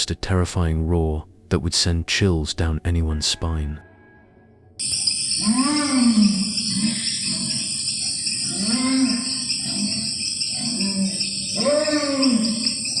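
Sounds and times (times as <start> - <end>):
deep animal calls: 4.8 - 13.0
high insect buzz: 4.8 - 13.0.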